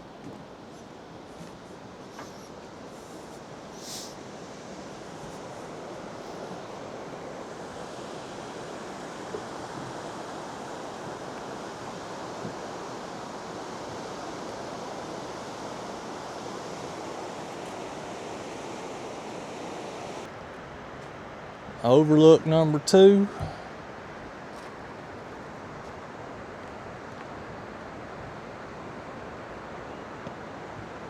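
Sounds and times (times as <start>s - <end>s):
brief hiss: 2.1s - 4.4s.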